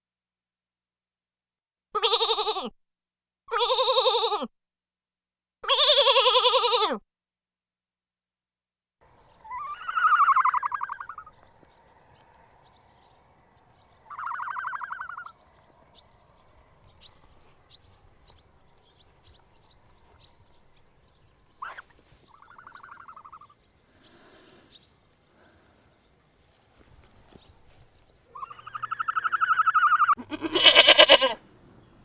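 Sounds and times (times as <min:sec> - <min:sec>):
livestock bleating: 0:02.0 - 0:02.7, 0:03.5 - 0:04.5, 0:05.6 - 0:07.0, 0:29.7 - 0:31.4.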